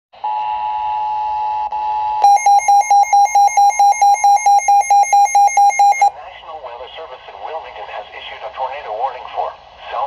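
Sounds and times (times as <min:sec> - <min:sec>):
rapidly pulsing beep: 0:02.2 - 0:06.1
two-tone attention signal: 0:02.2 - 0:06.1.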